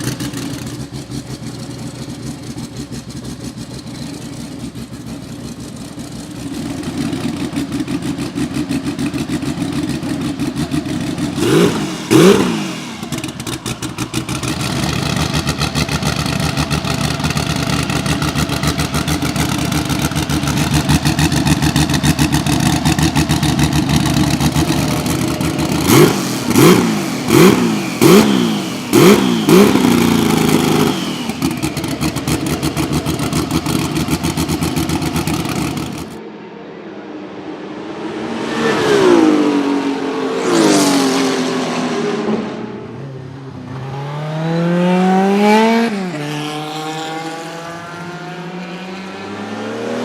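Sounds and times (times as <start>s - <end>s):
race car engine revving: 0.0s - 50.0s
sharp exhaust cracks: 10.8s - 36.2s.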